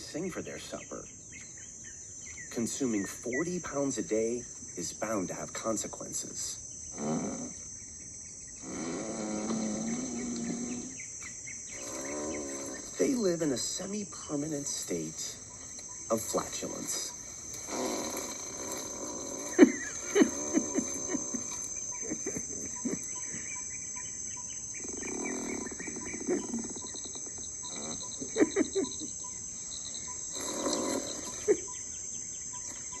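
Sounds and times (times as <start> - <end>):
insects chorus: 0.0 - 33.0
animal farts: 6.9 - 7.6, 8.6 - 11.0, 11.8 - 13.2, 17.5 - 21.7, 24.8 - 28.3, 30.1 - 31.6.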